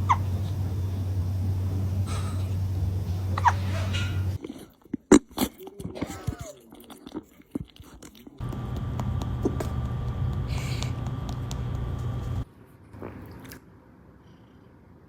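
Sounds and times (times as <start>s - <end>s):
cat hiccuping: 0.0s - 1.2s, 3.3s - 4.4s
steady low hum: 0.0s - 4.4s, 8.4s - 12.5s.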